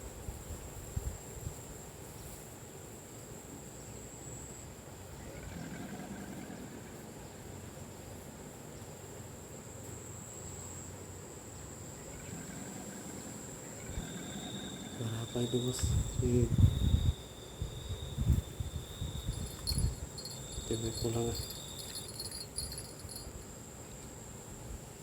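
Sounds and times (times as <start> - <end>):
high-pitched insect chirring: 13.7 - 23.6.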